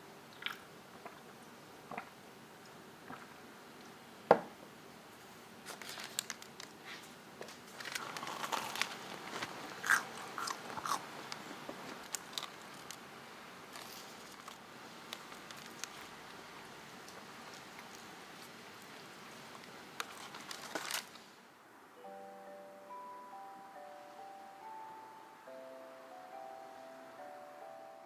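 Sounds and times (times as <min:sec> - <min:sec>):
person chewing crunchy food: 0:07.8 - 0:13.0.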